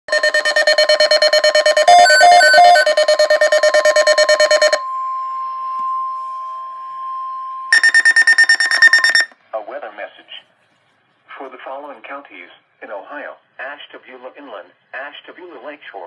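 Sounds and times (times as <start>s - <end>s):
steady alert tone: 0.1s - 6.3s, 7.0s - 9.3s
pulsing alarm beeps: 0.1s - 9.4s
short higher beeps: 0.1s - 9.4s.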